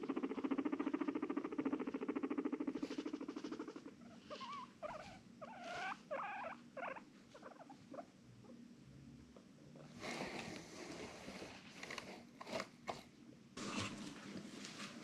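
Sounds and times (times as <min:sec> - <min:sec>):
guinea pig squeaking calls: 0:00.0 - 0:08.6
guinea pig rumbling purr: 0:00.0 - 0:13.1.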